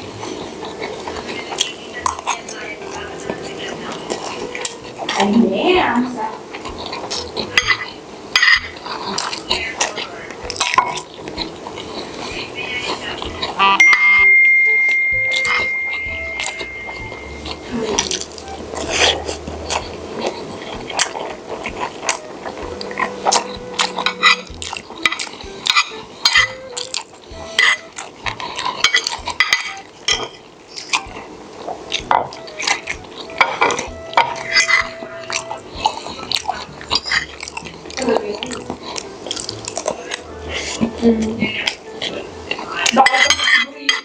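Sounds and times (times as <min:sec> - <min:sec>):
cutlery clinking on a plate: 0:06.6 - 0:11.9, 0:13.3 - 0:17.6, 0:23.0 - 0:26.5, 0:27.6 - 0:37.8, 0:38.6 - 0:44.0.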